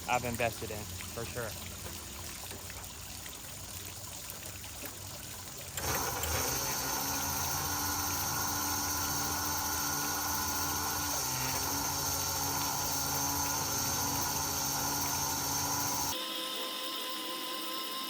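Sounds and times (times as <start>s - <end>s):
hose reel motor whining: 5.7s - 18.0s.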